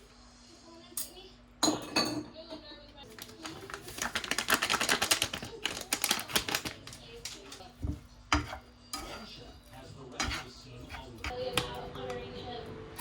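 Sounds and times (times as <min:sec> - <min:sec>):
knife chopping on cutting board: 0:07.9 - 0:09.2, 0:10.2 - 0:11.7.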